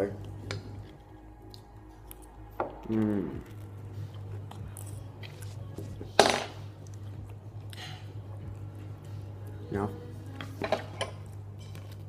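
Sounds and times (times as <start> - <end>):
low electrical hum: 0.0 - 12.0
person humming: 2.8 - 3.7.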